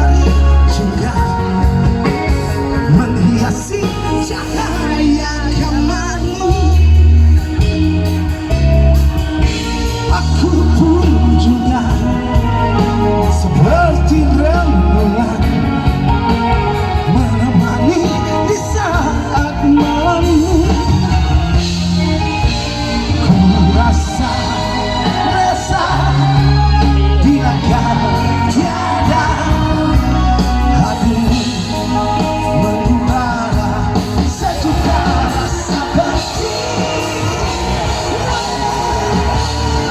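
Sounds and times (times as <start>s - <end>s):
drums: 0.0s - 39.9s
pop-rock band playing: 0.0s - 39.9s
sustained bass notes: 0.0s - 39.9s
wavering melodic lead: 0.0s - 39.9s
person singing or shouting: 23.2s - 39.9s.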